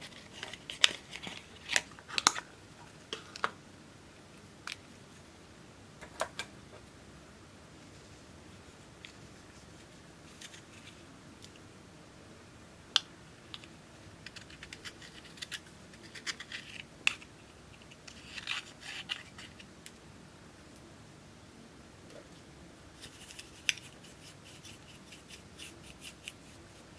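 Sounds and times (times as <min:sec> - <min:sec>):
scratchy scraping and crackling: 0:10.2 - 0:11.1, 0:14.2 - 0:19.7, 0:23.0 - 0:26.9.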